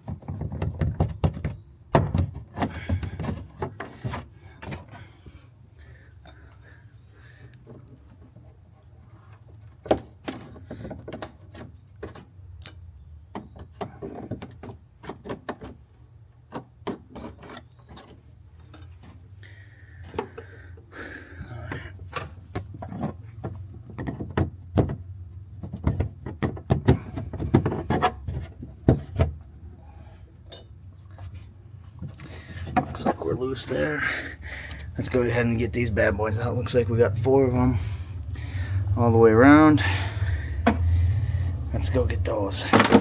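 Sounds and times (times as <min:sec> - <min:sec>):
plastic panels clicking and knocking: 0:00.0 - 0:05.0, 0:09.4 - 0:19.2, 0:21.7 - 0:29.5, 0:42.6 - 0:43.0
steady low hum: 0:31.2 - 0:43.0.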